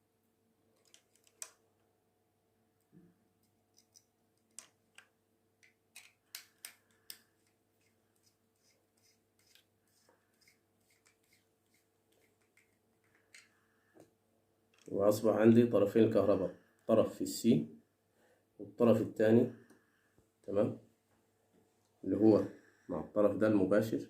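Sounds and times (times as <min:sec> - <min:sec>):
wires clicking and snipping: 0:00.7 - 0:01.6, 0:03.4 - 0:14.1, 0:14.7 - 0:15.0.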